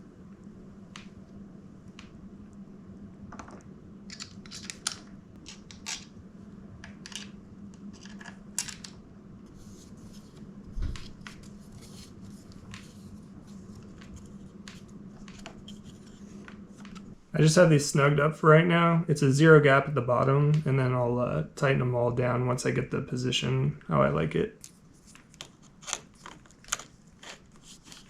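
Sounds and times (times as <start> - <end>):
steady low hum: 0.0 - 28.0
tools scraping: 24.6 - 28.0.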